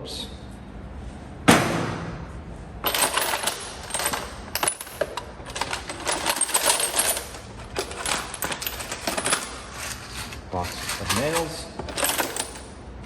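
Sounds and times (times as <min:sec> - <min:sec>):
small metal tools clinking and rattling: 0:02.8 - 0:12.7.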